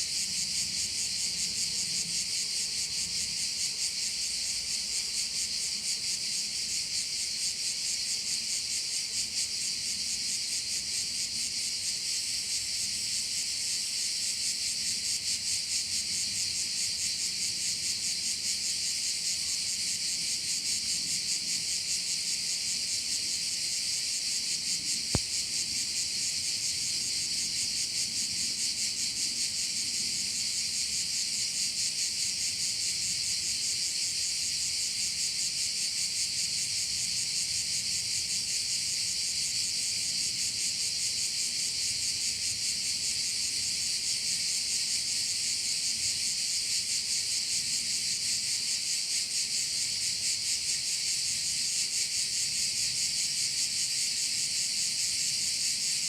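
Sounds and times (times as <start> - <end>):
crickets chirping: 0.0 - 56.0.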